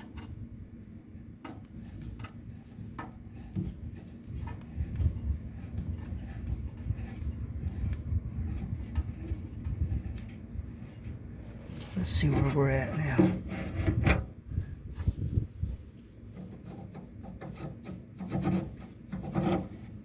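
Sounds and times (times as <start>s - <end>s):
low handling rumble: 0.3s - 20.0s
screw clicking and scraping: 1.4s - 11.2s, 16.3s - 20.0s.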